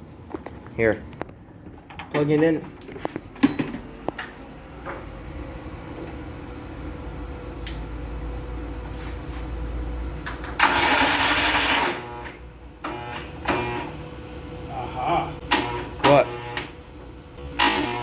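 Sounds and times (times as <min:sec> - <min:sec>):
electric starter cranking engine: 0:10.6 - 0:14.0, 0:15.5 - 0:16.7, 0:17.4 - 0:18.0.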